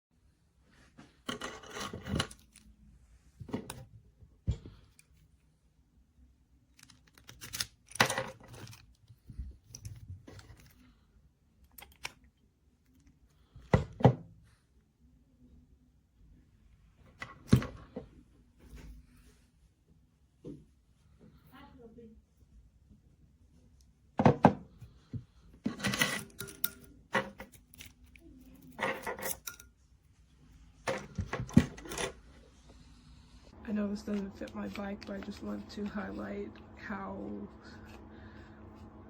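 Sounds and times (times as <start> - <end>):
handling knocks and clicks: 30.9 - 32.2.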